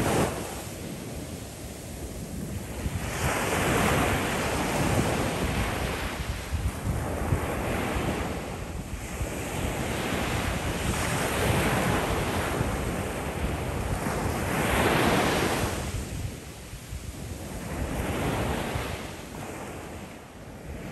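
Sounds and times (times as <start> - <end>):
ocean surf breaking on shore: 0.0 - 16.4
wind rumbling on microphone: 0.0 - 20.9.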